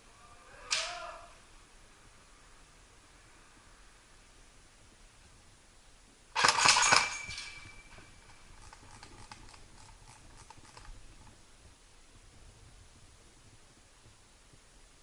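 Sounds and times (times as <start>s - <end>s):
airsoft gun rapid burst: 6.4s - 7.2s.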